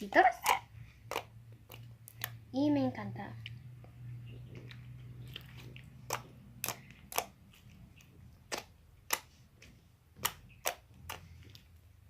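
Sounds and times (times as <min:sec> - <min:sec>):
slime popping clicks: 0:10.2 - 0:11.3.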